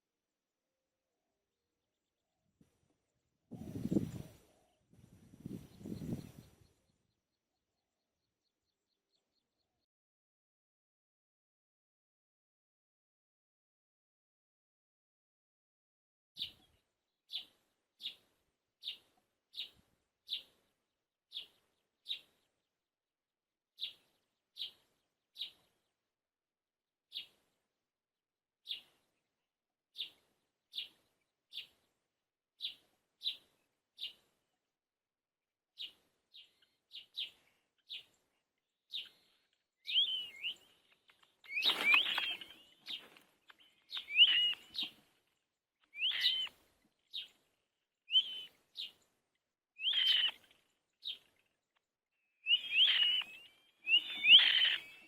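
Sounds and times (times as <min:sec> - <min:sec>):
bird chirping: 0:03.6 - 0:09.8, 0:35.8 - 0:49.2, 0:49.8 - 0:55.0
rustling: 0:41.5 - 0:43.4.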